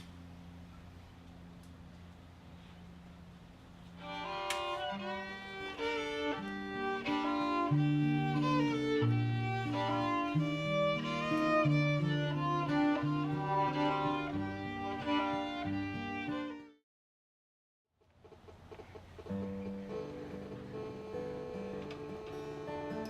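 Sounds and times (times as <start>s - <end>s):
fiddle playing a tune: 3.8s - 16.8s, 19.3s - 23.0s
low bowed string notes: 3.8s - 16.8s, 19.3s - 23.0s.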